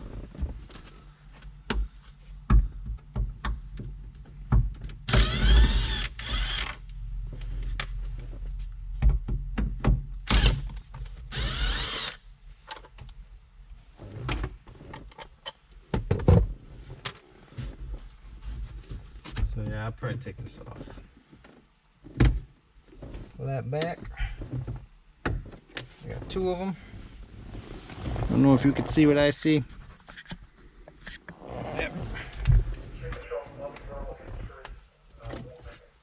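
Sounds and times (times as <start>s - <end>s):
cordless screwdriver motor whine: 5.1s - 6.8s, 11.3s - 12.2s.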